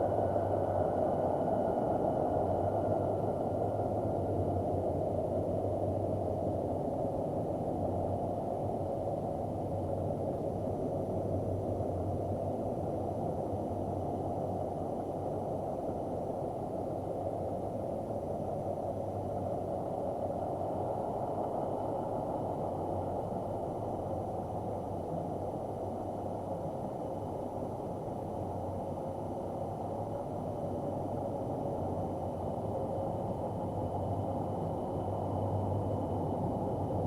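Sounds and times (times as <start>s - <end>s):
faint hum: 0.0s - 37.0s.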